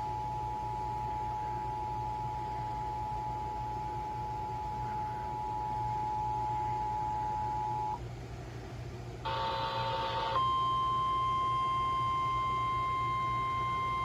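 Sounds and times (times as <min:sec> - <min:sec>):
two-tone attention signal: 0:09.3 - 0:14.0.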